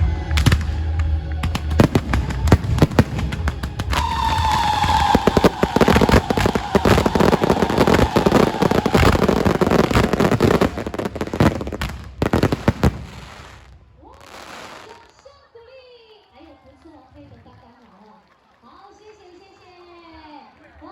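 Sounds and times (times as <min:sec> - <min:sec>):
fireworks crackling bangs: 0:00.0 - 0:15.3
falling whistle: 0:03.8 - 0:11.0.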